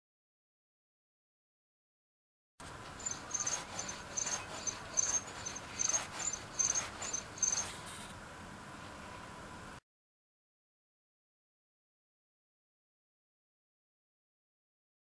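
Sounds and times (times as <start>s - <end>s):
hub dynamo chirping squeaks: 2.9s - 7.8s.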